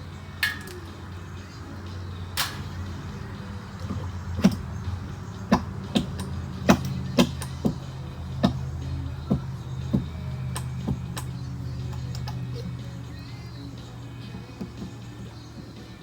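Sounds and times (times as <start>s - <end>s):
steady low hum: 0.0s - 16.0s
sharp knocks: 5.5s - 11.3s.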